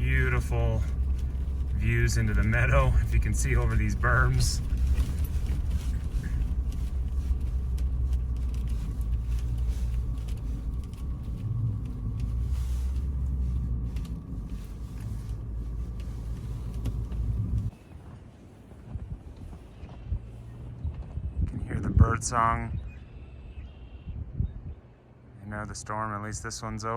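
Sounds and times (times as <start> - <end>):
car engine and road rumble: 0.0 - 26.9.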